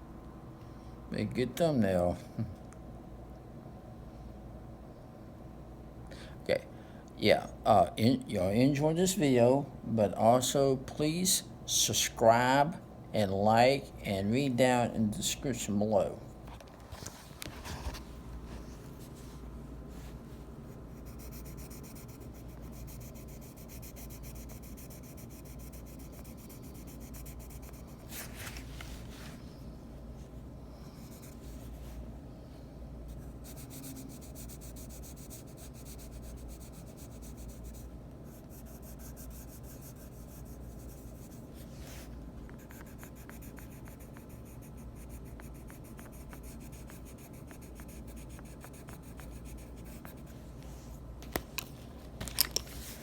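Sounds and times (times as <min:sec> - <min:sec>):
low steady hum: 0:00.0 - 0:53.0
scratchy rubbing: 0:20.8 - 0:29.4, 0:33.1 - 0:50.9.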